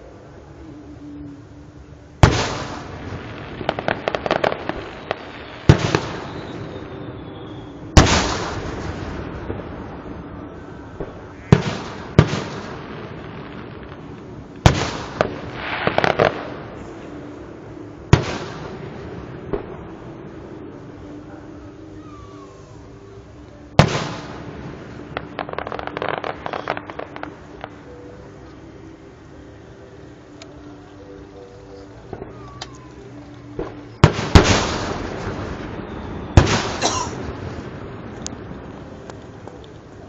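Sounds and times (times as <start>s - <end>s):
fireworks crackling: 0.0s - 40.0s
fireworks booming: 2.2s - 21.0s, 23.7s - 28.0s, 33.5s - 39.6s.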